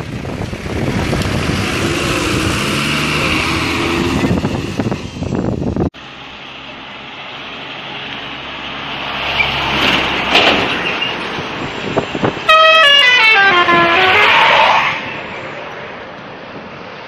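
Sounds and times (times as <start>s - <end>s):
bus engine and road noise: 0.0s - 17.0s
musical bus horn: 12.5s - 14.7s.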